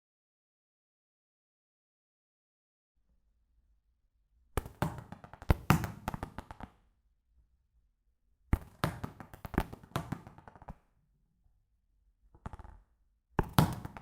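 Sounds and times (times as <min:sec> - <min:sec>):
ball being kicked: 0:04.6 - 0:06.7, 0:13.4 - 0:14.0.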